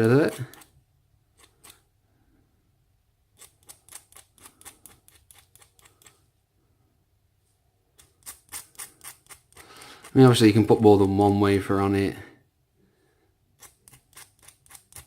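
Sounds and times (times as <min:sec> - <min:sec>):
scraping strokes on brass pin: 0:00.0 - 0:01.9, 0:03.3 - 0:06.3, 0:07.9 - 0:10.4, 0:13.5 - 0:15.0.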